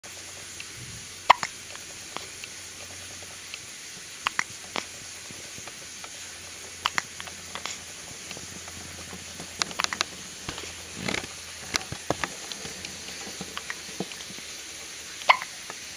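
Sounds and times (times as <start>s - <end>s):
baby hiccupping: 1.3s - 1.6s, 4.2s - 4.9s, 15.2s - 15.6s.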